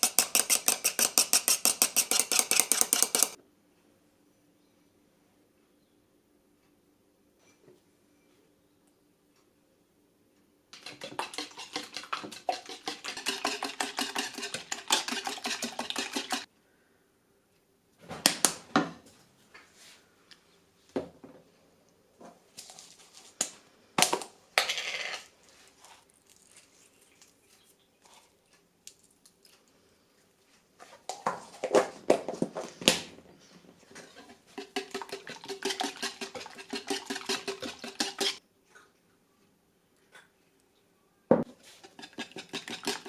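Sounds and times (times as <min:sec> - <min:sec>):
dishes and utensils rattling: 0:34.0 - 0:38.4.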